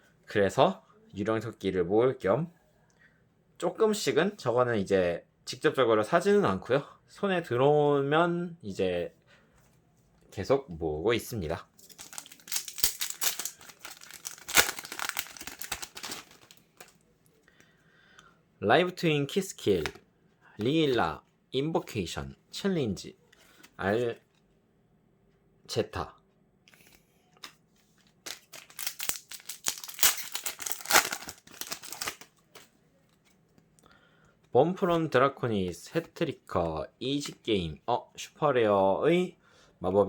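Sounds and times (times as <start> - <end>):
wrapper crinkling and tearing: 11.8 - 17.0, 28.2 - 32.7.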